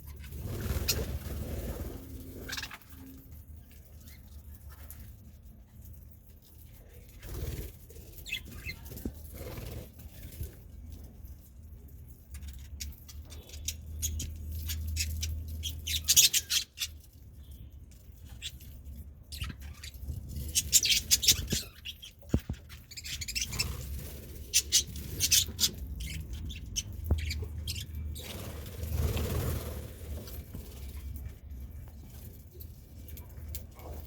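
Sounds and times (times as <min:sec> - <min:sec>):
budgerigars chirping: 0:15.0 - 0:16.9, 0:20.5 - 0:28.4.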